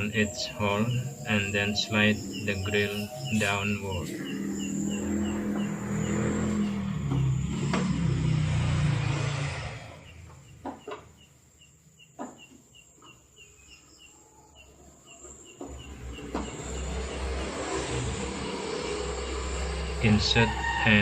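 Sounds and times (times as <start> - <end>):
high repeating chirp: 0.0 - 6.8
low traffic rumble: 0.0 - 21.0.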